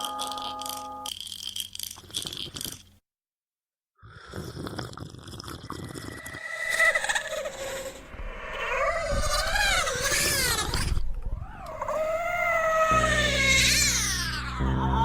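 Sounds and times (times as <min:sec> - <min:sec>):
ringing tone: 0:00.0 - 0:01.1
rasping pulses: 0:06.4 - 0:15.0
wavering animal-like cry: 0:06.4 - 0:15.0.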